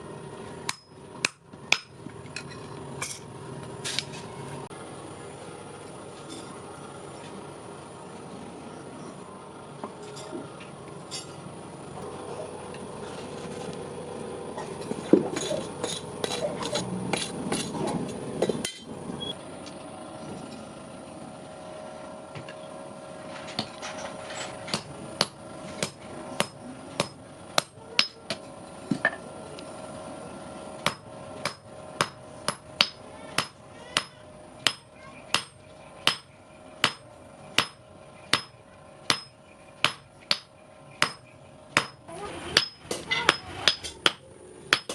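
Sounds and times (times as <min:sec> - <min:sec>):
hammer striking metal on anvil: 0:00.6 - 0:02.0, 0:24.7 - 0:28.4, 0:30.8 - 0:42.0, 0:42.6 - 0:44.9.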